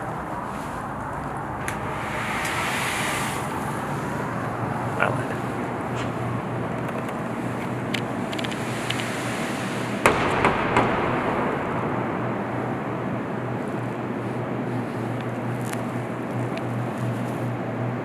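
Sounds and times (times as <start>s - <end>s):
low hum: 0.0s - 18.0s
sharp bang with ringing tail: 7.8s - 15.6s.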